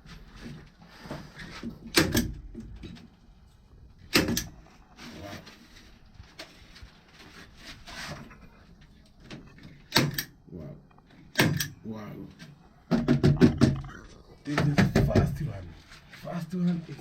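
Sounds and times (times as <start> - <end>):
stapler firing into board: 4.1 - 4.5, 9.9 - 10.3, 11.4 - 11.7.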